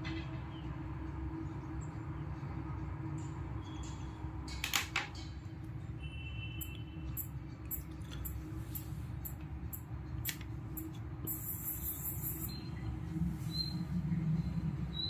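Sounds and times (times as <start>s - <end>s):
low background hum: 0.0s - 15.0s
small birds chirping: 6.6s - 15.0s.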